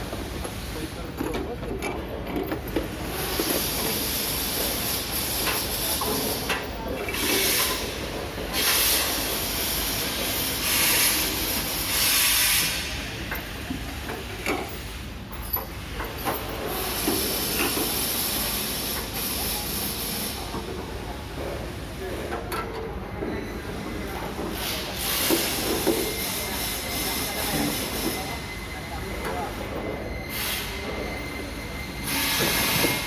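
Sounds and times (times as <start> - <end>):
factory noise: 0.0 - 33.0
hissing air bursts: 7.1 - 13.6, 32.0 - 33.0.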